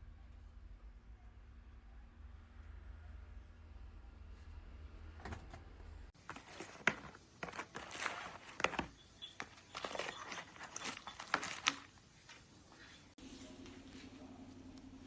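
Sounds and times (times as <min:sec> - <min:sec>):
low steady hum: 0:00.0 - 0:06.2, 0:09.2 - 0:15.0
crinkling and rustling: 0:05.1 - 0:14.2.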